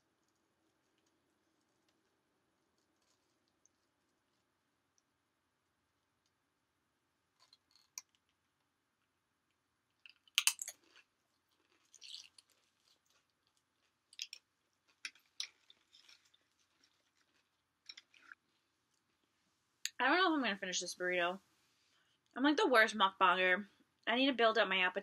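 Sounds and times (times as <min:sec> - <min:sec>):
close chewing with crunches: 0:10.0 - 0:19.3.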